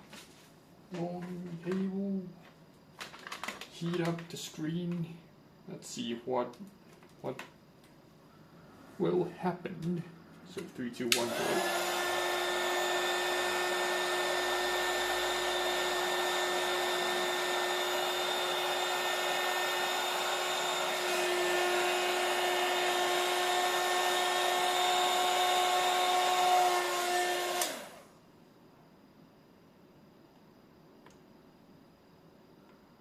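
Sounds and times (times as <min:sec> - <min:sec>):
hot-air blower motor whine: 0:11.1 - 0:28.2.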